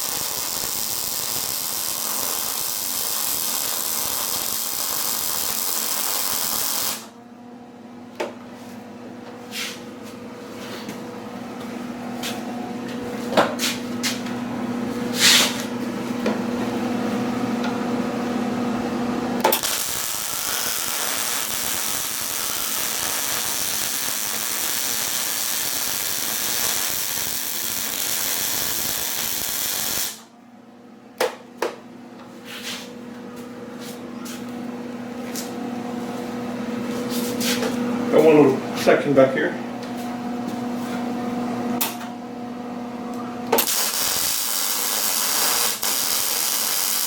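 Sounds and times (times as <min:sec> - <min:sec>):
welder hissing: 0:00.0 - 0:07.1, 0:19.5 - 0:30.2, 0:43.6 - 0:47.0.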